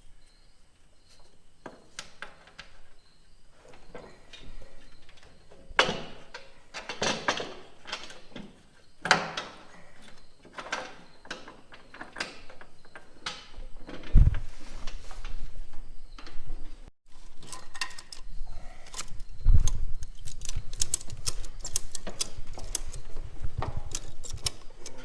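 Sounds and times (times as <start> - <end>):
metal tools clanking and rattling: 3.7 - 14.3, 17.1 - 25.0.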